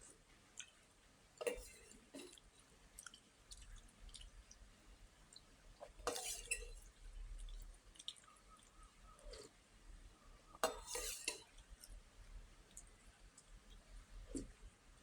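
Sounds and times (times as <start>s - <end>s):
person chewing: 1.9s - 4.6s, 7.3s - 9.5s.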